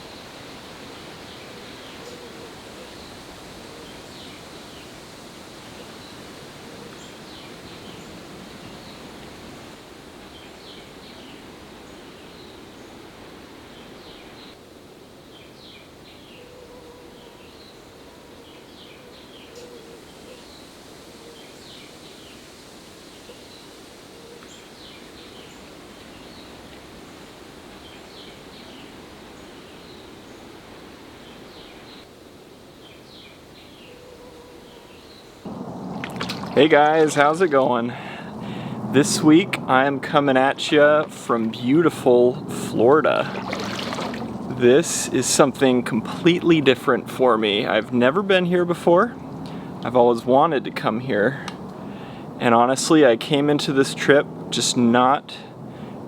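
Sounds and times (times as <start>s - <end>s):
steady hiss: 35.5s - 41.0s.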